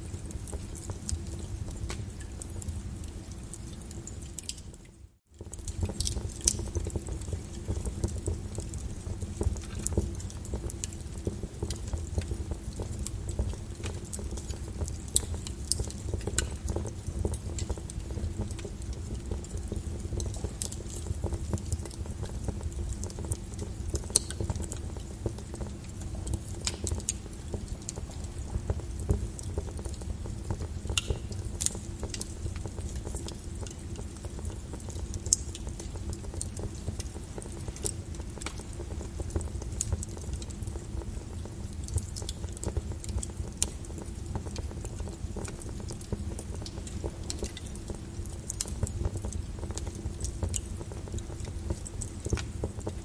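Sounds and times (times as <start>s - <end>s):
rain: 0.0s - 53.0s
wood fire crackling and popping: 0.0s - 53.0s.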